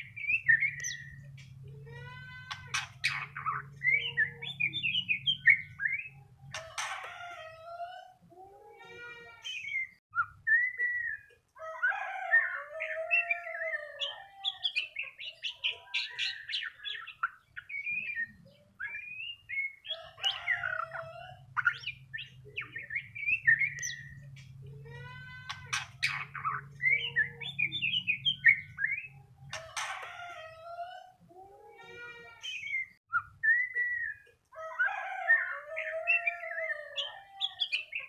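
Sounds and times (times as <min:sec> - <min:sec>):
bird singing whistled phrases: 0:32.6 - 0:34.2.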